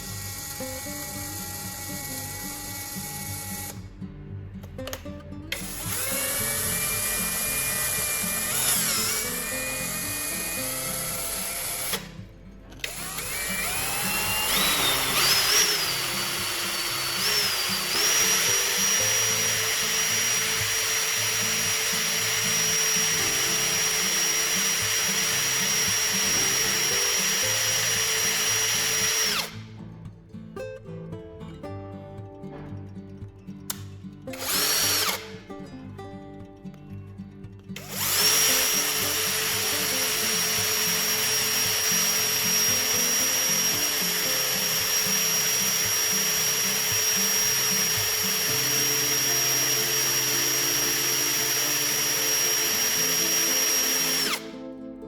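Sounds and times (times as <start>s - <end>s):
small electric drill whining: 0.0s - 4.0s, 5.5s - 29.7s, 34.3s - 35.4s, 37.8s - 54.7s
background music with beat: 29.3s - 41.9s.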